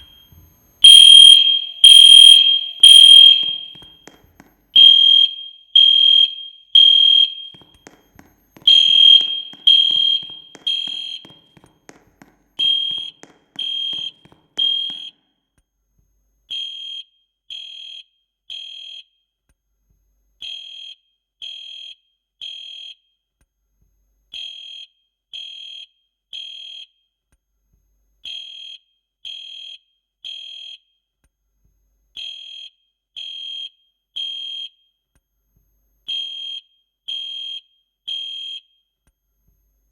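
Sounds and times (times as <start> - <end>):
fire alarm beeping: 0.0 - 4.1, 4.8 - 7.9, 8.6 - 11.6, 12.6 - 15.1, 32.2 - 34.8, 36.1 - 38.7.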